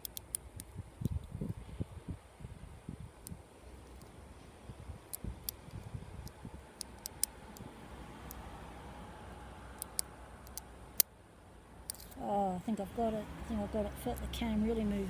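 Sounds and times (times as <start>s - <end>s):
lock pick clicking inside lock: 0.0s - 1.3s, 5.1s - 7.6s, 9.8s - 11.1s.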